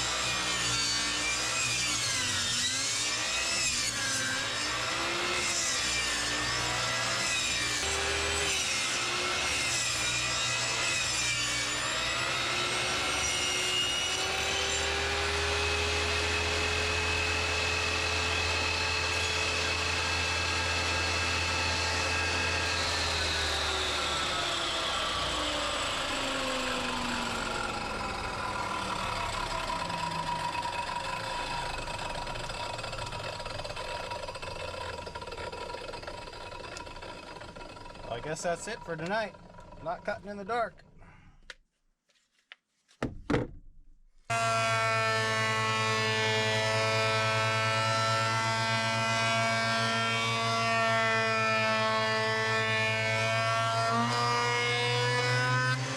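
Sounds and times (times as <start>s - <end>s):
table saw ripping board: 0.0s - 38.2s
saw motor winding down: 0.0s - 40.7s, 44.3s - 55.9s.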